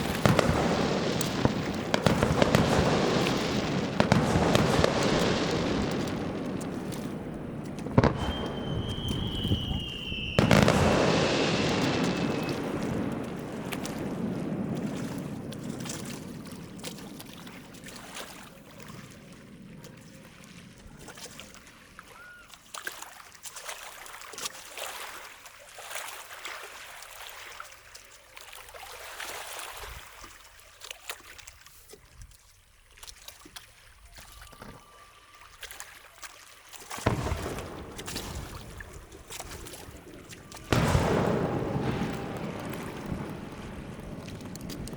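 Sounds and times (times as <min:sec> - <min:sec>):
firework shell bursts: 0:00.0 - 0:14.2, 0:37.0 - 0:44.9
firework crackling pops: 0:00.0 - 0:18.5, 0:36.8 - 0:44.9.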